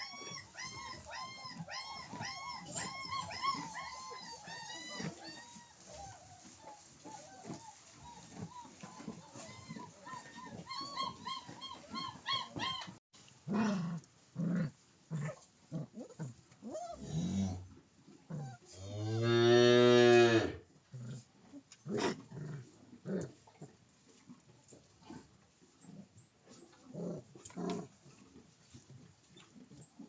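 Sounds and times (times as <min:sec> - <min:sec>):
cow mooing: 0:18.8 - 0:20.6.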